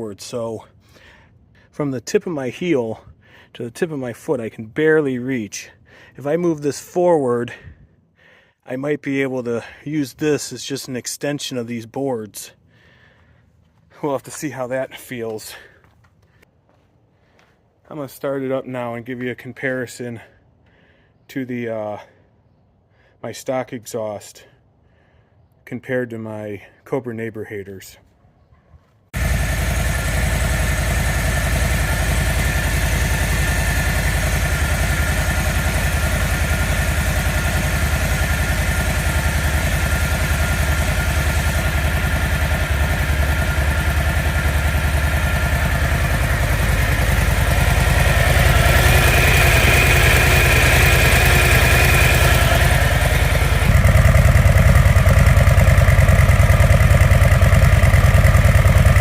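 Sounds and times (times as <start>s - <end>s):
motorcycle engine idling: 29.2s - 59.0s.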